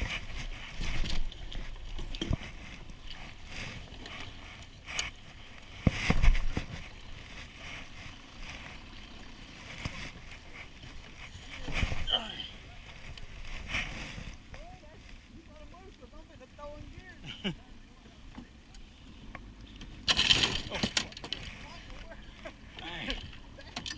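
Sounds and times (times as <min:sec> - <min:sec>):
water sloshing against boat: 0:00.0 - 0:17.3.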